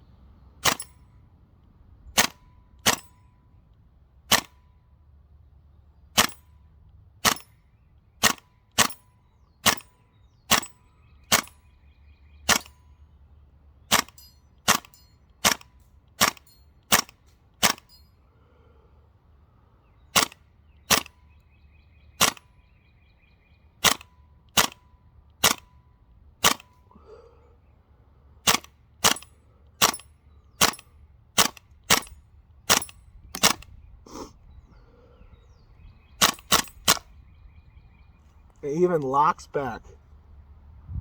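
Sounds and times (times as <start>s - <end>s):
airsoft rifle shots: 0.6s - 1.0s, 2.2s - 3.2s, 4.3s - 4.6s, 6.2s - 6.5s, 7.2s - 7.5s, 8.2s - 9.0s, 9.6s - 11.6s, 12.4s - 12.8s, 13.9s - 17.9s, 20.1s - 21.2s, 22.2s - 22.5s, 23.8s - 25.8s, 26.4s - 26.8s, 28.4s - 33.7s, 36.2s - 37.1s
bolt cycling: 0.6s - 1.0s, 2.2s - 3.2s, 4.3s - 4.6s, 13.9s - 18.0s, 20.2s - 21.2s, 22.2s - 22.5s, 23.8s - 25.8s, 26.4s - 26.8s, 28.5s - 30.8s, 31.4s - 33.8s, 36.2s - 37.1s.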